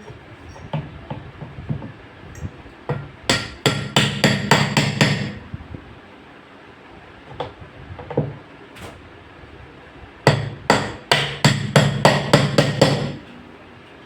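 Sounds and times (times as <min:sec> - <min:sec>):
hammer striking metal part: 0:02.9 - 0:05.4, 0:10.3 - 0:13.2.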